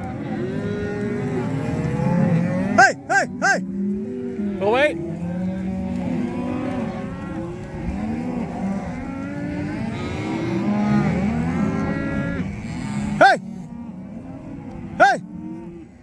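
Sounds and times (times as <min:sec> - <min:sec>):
cattle mooing: 0:00.0 - 0:16.0.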